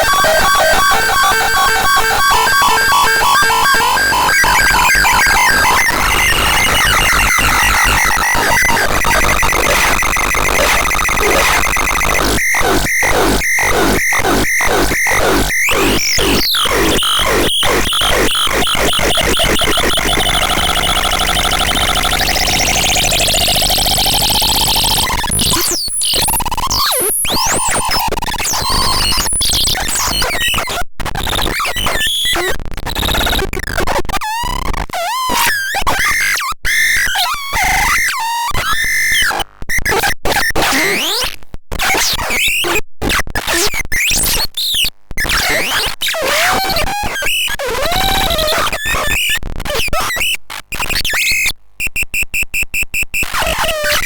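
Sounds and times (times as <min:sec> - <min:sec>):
harsh synthesizer tones: 0:00.0 - 0:26.4.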